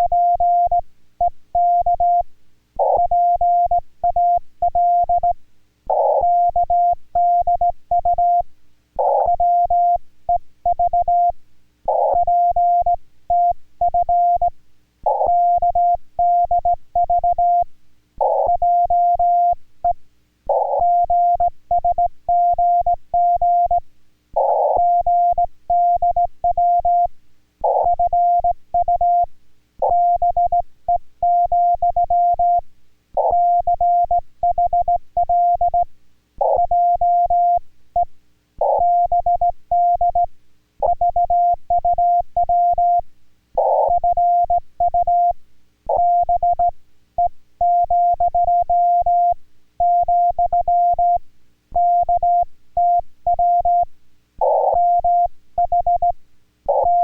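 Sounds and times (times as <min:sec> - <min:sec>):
morse code beeps: 0:15.2 - 0:17.7, 0:24.4 - 0:27.1, 0:27.7 - 0:30.6, 0:31.2 - 0:32.6, 0:33.2 - 0:43.0, 0:43.6 - 0:51.2, 0:51.8 - 0:57.0.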